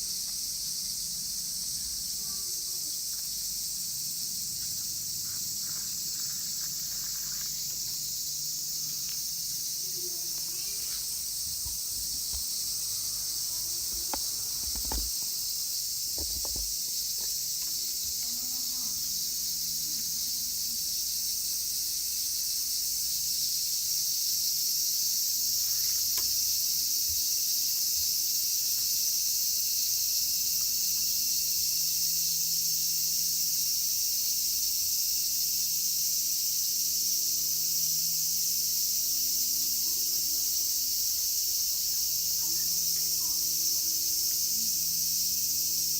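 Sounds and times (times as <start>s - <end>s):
cicadas singing: 0.0s - 45.9s
soft handling knocks: 13.8s - 15.3s, 16.1s - 17.3s.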